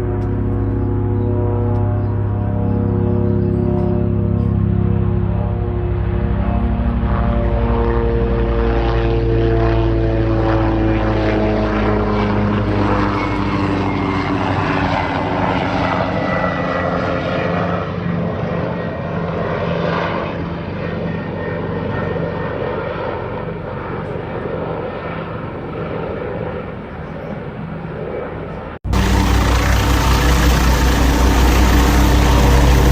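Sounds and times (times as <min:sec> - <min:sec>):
propeller aircraft engine: 0:00.0 - 0:32.9
steady rush: 0:28.8 - 0:32.9.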